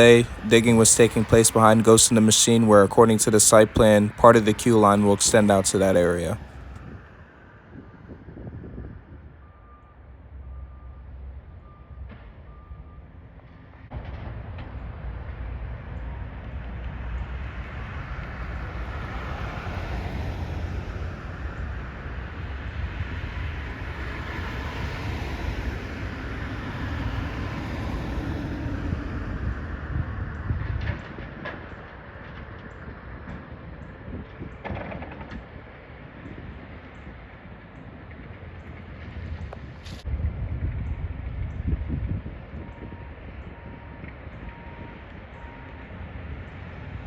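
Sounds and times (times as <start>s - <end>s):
heavy vehicle engine rumble: 0.0s - 6.4s
outdoor noise: 0.0s - 47.0s.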